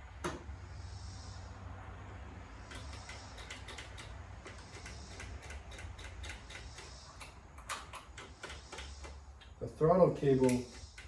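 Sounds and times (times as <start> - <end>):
chainsaw parts clicking and tapping: 2.7 - 9.6, 10.2 - 11.0.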